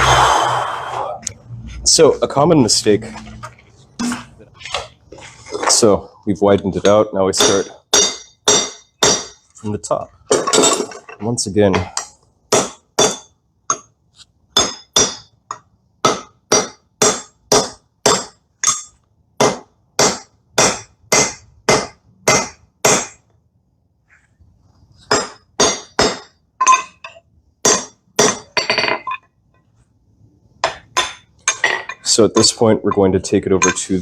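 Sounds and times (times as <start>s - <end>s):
hammer striking metal on anvil: 7.4s - 9.4s, 12.5s - 13.9s, 14.6s - 23.2s, 25.1s - 29.2s, 30.6s - 34.0s.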